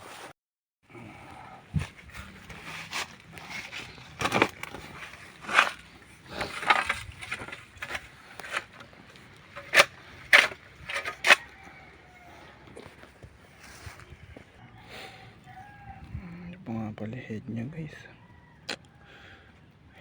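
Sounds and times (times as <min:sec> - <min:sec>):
crunching and scraping in ash: 0:00.9 - 0:14.6
sharp cracks and clicks: 0:04.2 - 0:11.5.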